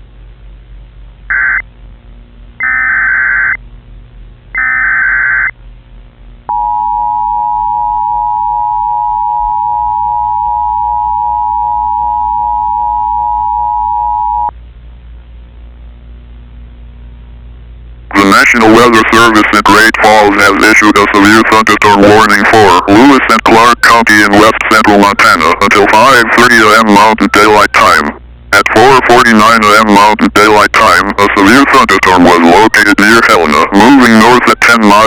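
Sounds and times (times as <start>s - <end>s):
screeching data tones: 1.3s - 1.6s, 2.6s - 3.6s, 4.6s - 5.6s
two-tone attention signal: 6.5s - 14.5s.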